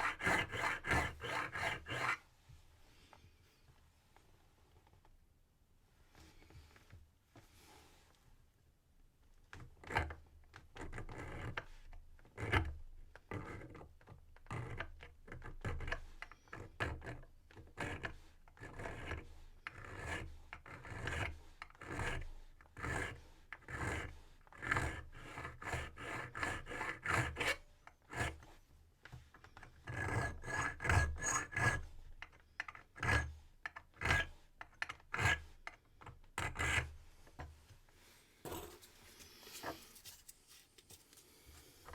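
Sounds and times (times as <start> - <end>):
hand file rasping on brass: 0.0 - 2.2, 14.5 - 28.6, 29.6 - 35.8, 36.4 - 37.0.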